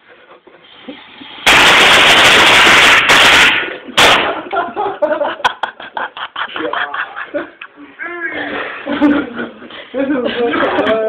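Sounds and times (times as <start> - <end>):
firecrackers banging rapidly: 1.2 - 4.8.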